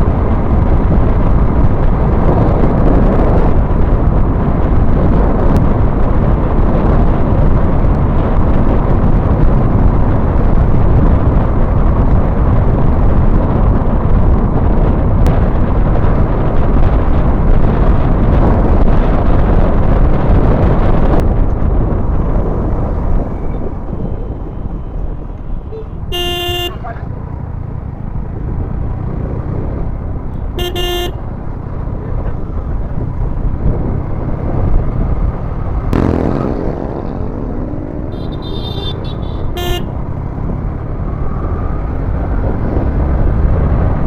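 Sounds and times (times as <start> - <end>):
wind buffeting microphone: 0.0 - 44.0.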